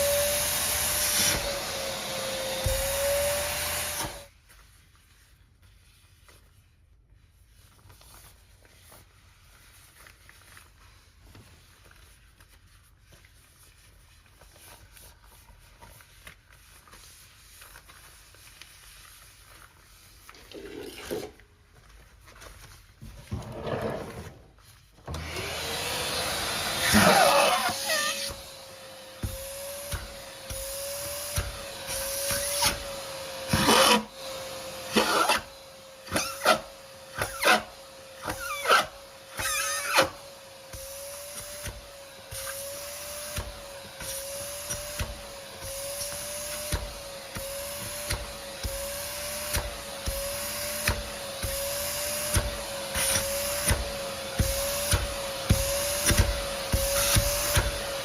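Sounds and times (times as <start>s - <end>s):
vacuum cleaner motor whine: 0.0s - 4.3s, 23.3s - 58.0s
debris crunching in vacuum nozzle: 25.0s - 34.2s.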